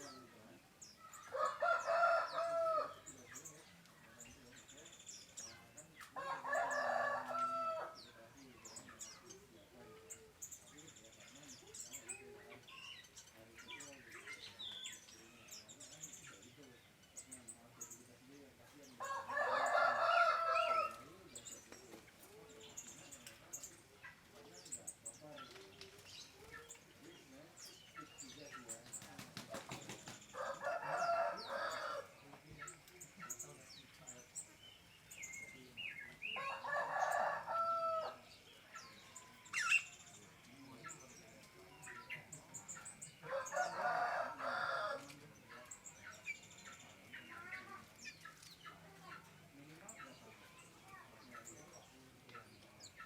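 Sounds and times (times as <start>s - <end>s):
small birds chirping: 0.0s - 53.0s
rooster crowing: 6.2s - 8.0s, 19.0s - 21.0s, 30.4s - 32.1s, 36.4s - 38.2s, 43.2s - 45.0s.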